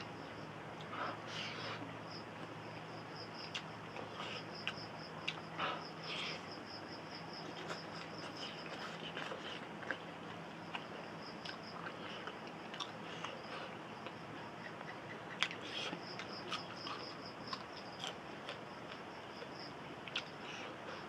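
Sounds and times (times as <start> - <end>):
person chewing food: 3.5 - 6.5, 7.4 - 20.4.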